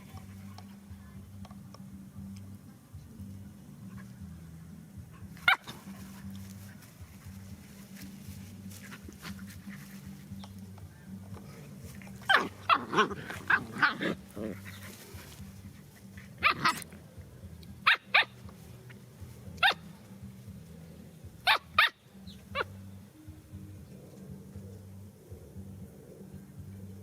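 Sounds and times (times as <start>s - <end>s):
steady low hum: 0.0s - 27.0s
dog barking: 5.4s - 5.7s, 17.8s - 18.3s, 19.6s - 19.8s, 21.4s - 22.0s.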